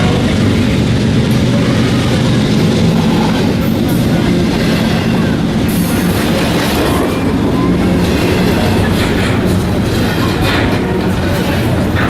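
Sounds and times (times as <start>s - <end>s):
train wheels rumbling on rail: 0.0s - 12.0s.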